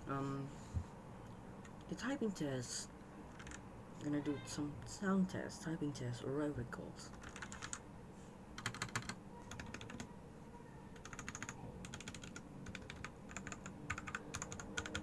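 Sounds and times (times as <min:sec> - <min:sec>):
mechanical keyboard typing: 0:03.3 - 0:03.6, 0:07.1 - 0:07.8, 0:08.6 - 0:10.1, 0:11.0 - 0:15.0.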